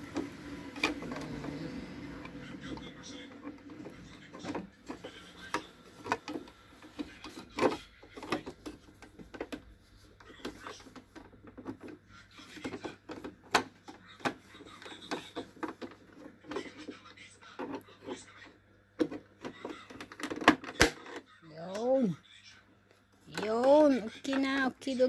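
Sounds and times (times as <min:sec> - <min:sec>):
plastic clicks and knocks: 0:03.4 - 0:16.9, 0:19.0 - 0:21.9.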